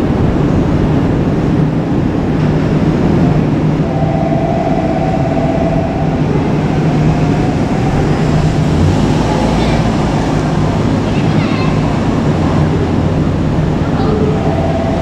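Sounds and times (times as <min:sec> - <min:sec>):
train rumbling past: 0:00.0 - 0:15.0
high warbling tone: 0:03.8 - 0:11.1, 0:12.1 - 0:15.0.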